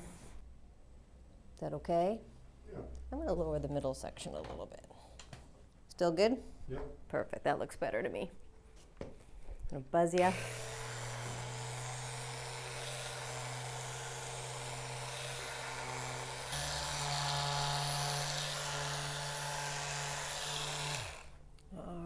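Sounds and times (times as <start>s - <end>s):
electric massager buzzing: 10.2s - 21.4s.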